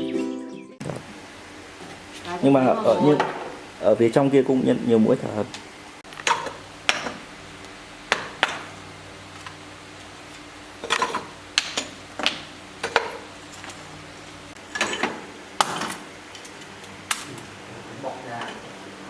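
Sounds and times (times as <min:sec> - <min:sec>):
hard objects knocking: 0:02.9 - 0:03.6, 0:06.1 - 0:07.3, 0:08.1 - 0:08.8, 0:10.8 - 0:13.7.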